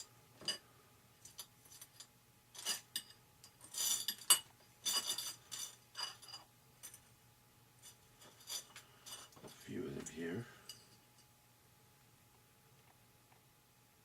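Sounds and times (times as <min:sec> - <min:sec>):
small metal parts clinking: 0:01.2 - 0:07.1, 0:07.8 - 0:09.8.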